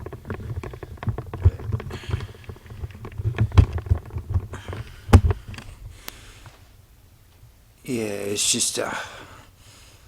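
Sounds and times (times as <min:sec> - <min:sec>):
camera handling thumps: 0:00.0 - 0:05.8.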